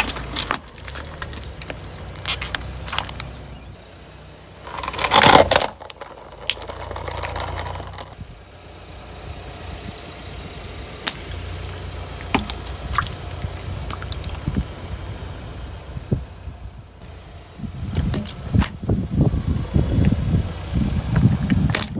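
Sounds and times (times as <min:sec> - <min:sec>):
objects crunching under vehicle: 0:00.0 - 0:03.8, 0:04.6 - 0:08.2
heavy vehicle engine: 0:00.0 - 0:21.9
sharp cracks: 0:04.6 - 0:08.2.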